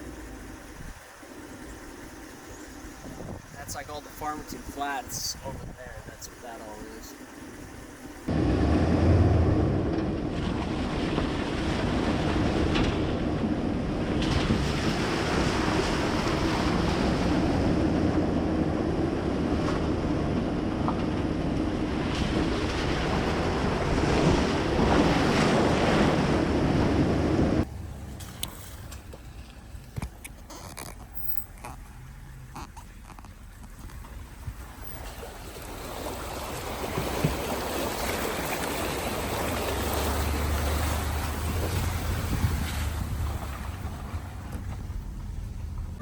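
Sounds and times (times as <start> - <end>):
wind buffeting microphone: 2.7 - 6.6, 36.2 - 46.0.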